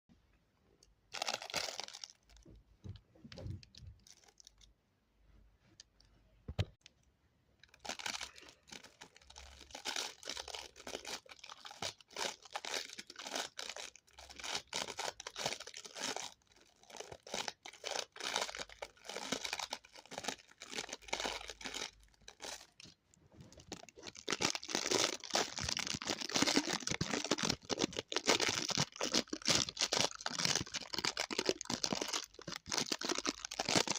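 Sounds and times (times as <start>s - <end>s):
material crinkling and crackling: 1.1s - 4.7s, 7.6s - 33.9s.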